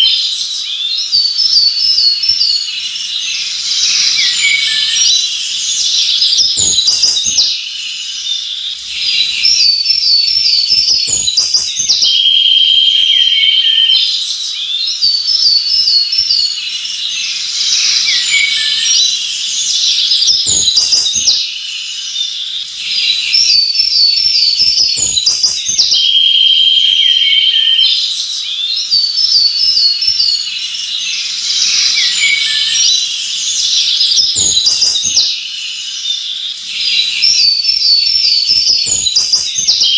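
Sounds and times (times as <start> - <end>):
songbirds chirping and trilling: 0.0 - 39.9
faint high hiss: 2.4 - 9.5, 16.3 - 23.5.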